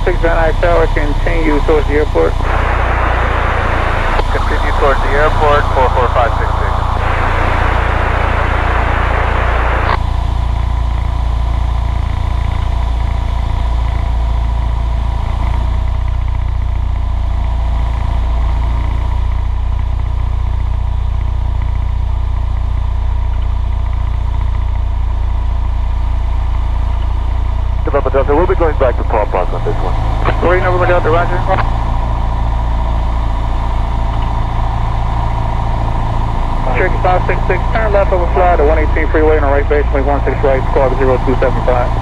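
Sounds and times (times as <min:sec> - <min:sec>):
radio hiss: 0:00.0 - 0:10.1, 0:27.8 - 0:32.0, 0:35.3 - 0:42.0
piston aircraft engine droning: 0:00.0 - 0:42.0
radio click: 0:02.4 - 0:10.0, 0:29.4 - 0:31.7.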